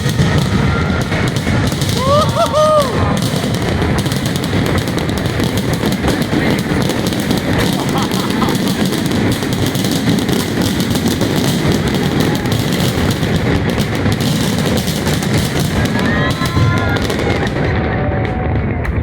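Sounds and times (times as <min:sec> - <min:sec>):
firework whistles: 0:00.0 - 0:06.2
fireworks bangs and crackles: 0:00.0 - 0:19.0.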